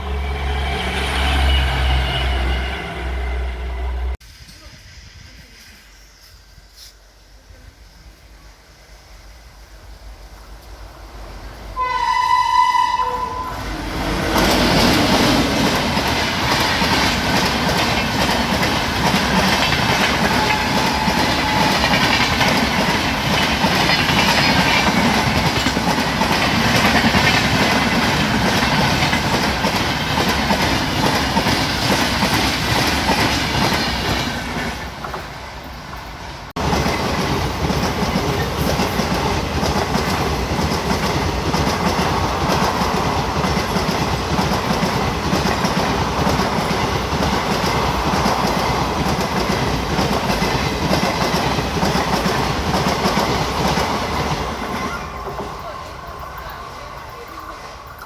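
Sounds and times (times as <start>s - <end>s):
train horn: 0.0s - 4.2s, 11.8s - 14.8s, 20.2s - 22.2s
train wheels clattering over rails: 13.6s - 58.0s.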